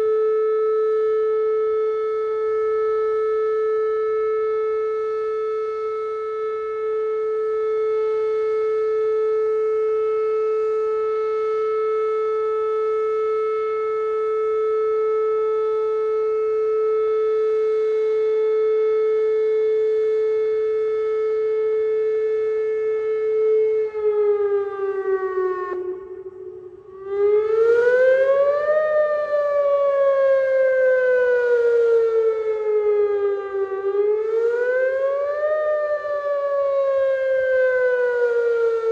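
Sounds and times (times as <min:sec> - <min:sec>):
steady siren alert tone: 0:00.0 - 0:38.9
wailing siren: 0:00.0 - 0:38.9.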